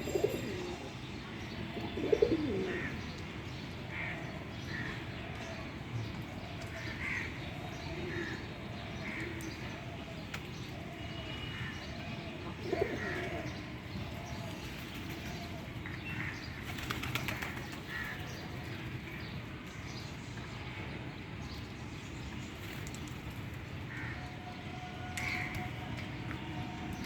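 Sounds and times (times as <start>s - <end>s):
pigeons and birds calling: 0.0s - 19.8s, 21.6s - 27.0s
wings flapping: 16.7s - 17.7s.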